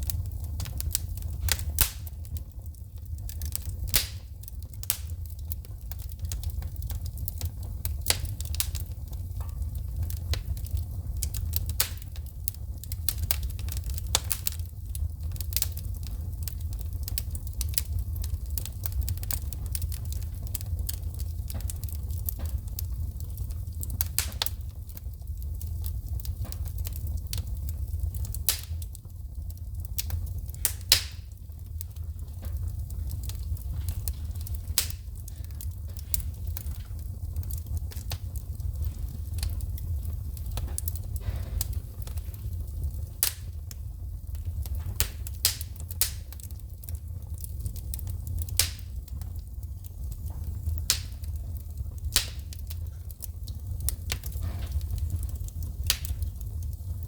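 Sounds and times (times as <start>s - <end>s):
sharp pops of sparks: 0.0s - 29.0s, 30.0s - 46.6s, 47.3s - 57.0s
wood fire crackling: 0.0s - 57.0s.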